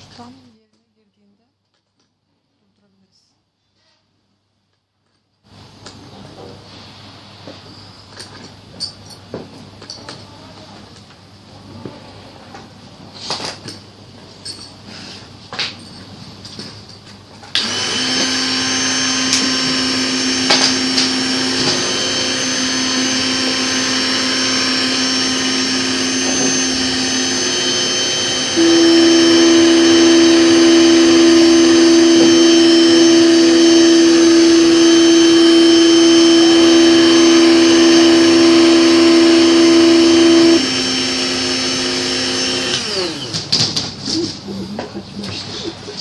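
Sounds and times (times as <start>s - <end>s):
mill motor humming: 17.6s - 43.5s.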